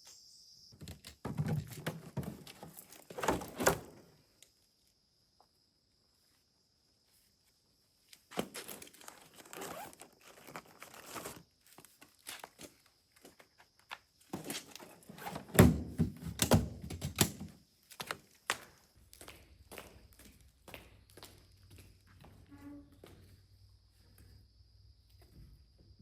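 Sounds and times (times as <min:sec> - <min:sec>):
rustling and crinkling: 0:00.8 - 0:04.5, 0:07.4 - 0:18.9
knocks and thuds: 0:15.4 - 0:17.4.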